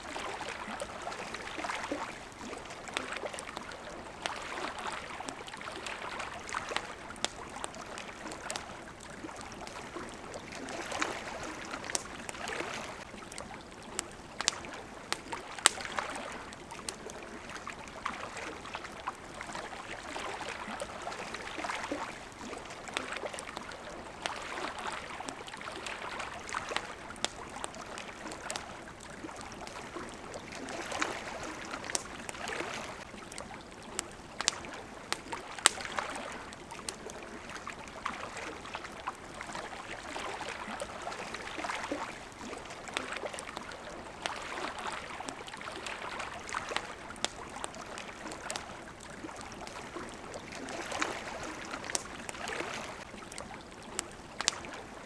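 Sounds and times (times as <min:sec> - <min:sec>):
campfire popping and crackling: 0:00.0 - 0:55.0
small waves lapping at shore: 0:00.0 - 0:55.0.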